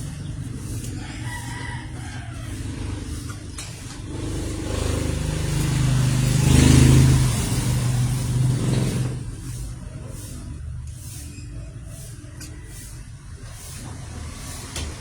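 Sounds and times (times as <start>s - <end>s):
vehicle engine passing by: 0.0s - 15.0s.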